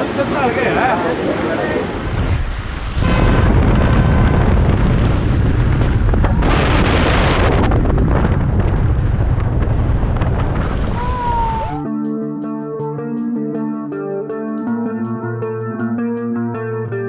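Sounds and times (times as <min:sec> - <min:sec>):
waterfall roaring: 0:00.0 - 0:05.2
wind on microphone: 0:00.0 - 0:11.9.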